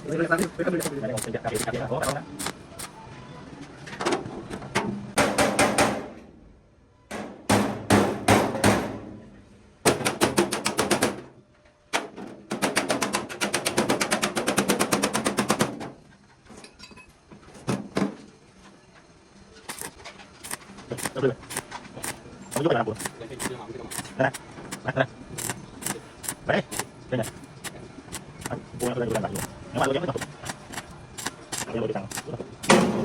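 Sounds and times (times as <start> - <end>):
rapid hammering strikes: 0.3 - 2.6, 12.5 - 15.8, 25.4 - 33.0.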